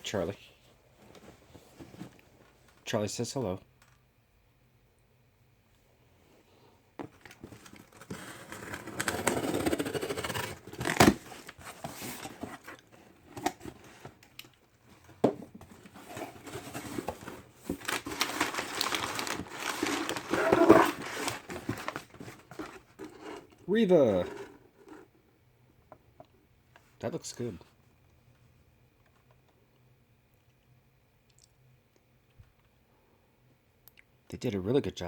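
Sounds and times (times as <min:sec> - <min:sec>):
cardboard and plastic crinkling: 0:07.0 - 0:25.0.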